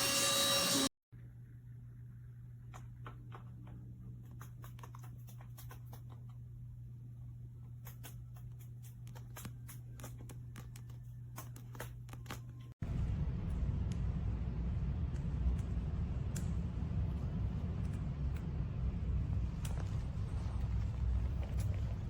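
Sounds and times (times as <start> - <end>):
noisy rumble: 12.8 - 22.0
steady low hum: 12.8 - 22.0.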